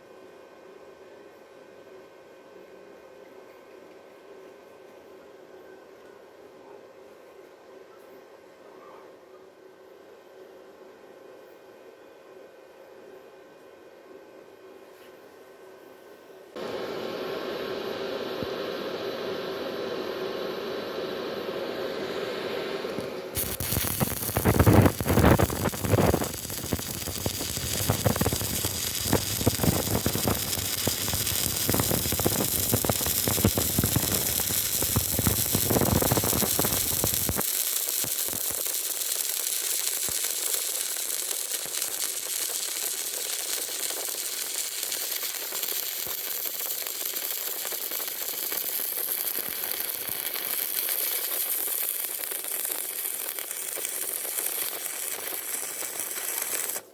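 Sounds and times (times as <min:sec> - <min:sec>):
welding arc crackling and sizzling: 0:21.5 - 0:56.9.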